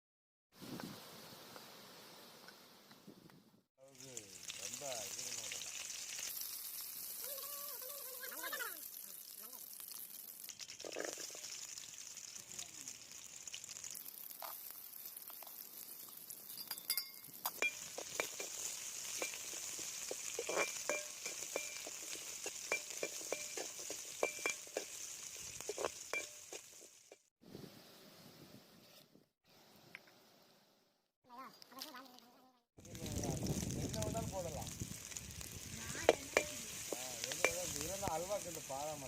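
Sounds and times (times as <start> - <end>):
food sizzling in a pan: 3.8 - 27.3, 32.8 - 39.0
utensil clinking against pan: 20.4 - 24.9.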